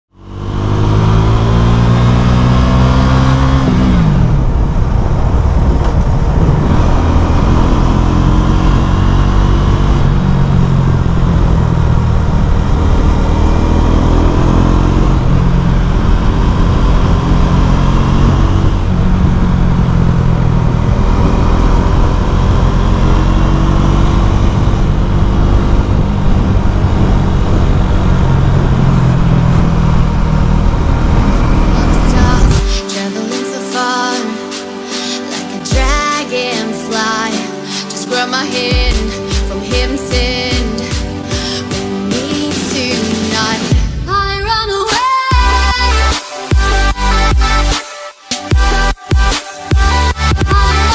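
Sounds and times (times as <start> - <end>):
motorcycle engine revving: 0.1 - 32.9, 38.7 - 44.1.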